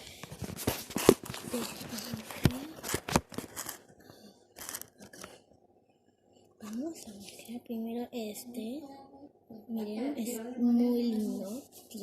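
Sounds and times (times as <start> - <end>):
plastic crinkling: 4.6 - 5.4.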